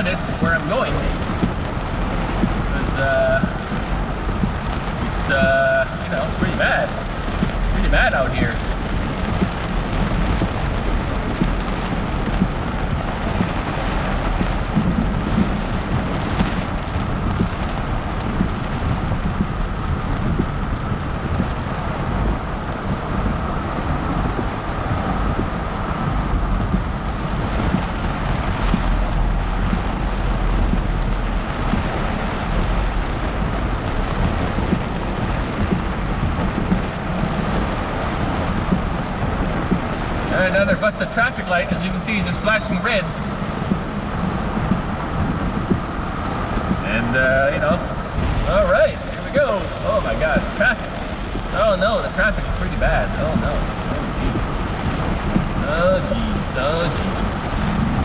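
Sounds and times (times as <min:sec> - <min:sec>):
deep low rumble: 0:00.0 - 0:58.0
heavy rain on car: 0:00.0 - 0:58.0
road noise: 0:00.0 - 0:58.0.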